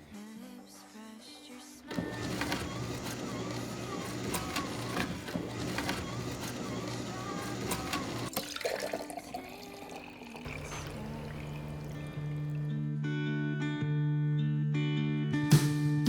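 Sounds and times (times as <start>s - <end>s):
background music: 0.0s - 16.0s
blender grinding: 1.9s - 12.8s.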